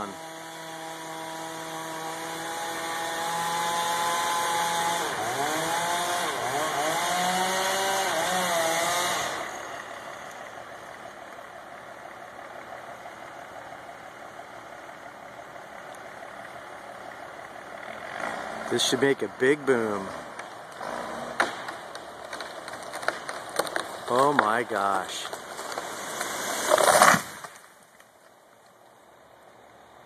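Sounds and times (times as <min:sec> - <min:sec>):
chainsaw cutting into tree: 0:00.0 - 0:10.5, 0:17.8 - 0:27.7.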